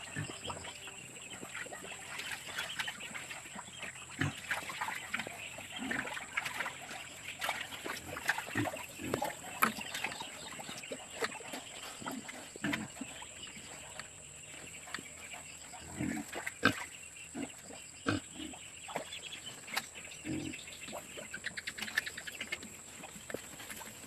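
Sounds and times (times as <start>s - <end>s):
pigs grunting: 0.0s - 19.1s, 20.1s - 21.9s.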